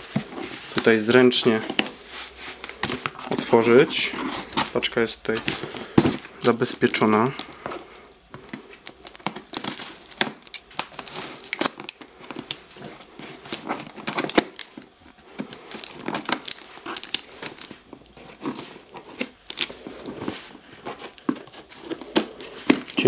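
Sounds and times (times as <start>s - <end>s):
packaging tearing and crinkling: 2.6s - 7.7s, 8.4s - 23.0s.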